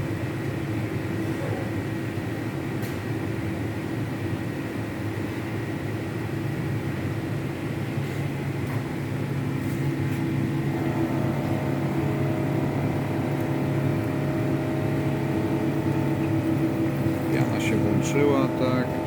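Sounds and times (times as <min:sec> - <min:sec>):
soldering machine hum: 0:07.0 - 0:19.0.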